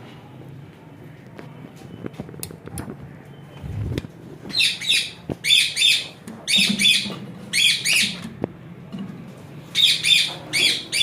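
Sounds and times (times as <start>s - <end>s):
parrot squawking: 4.5s - 8.2s, 9.8s - 11.0s.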